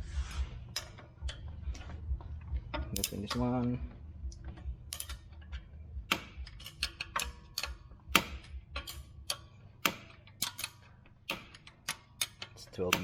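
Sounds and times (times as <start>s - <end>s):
ratchet wrench clicking: 4.9s - 13.0s.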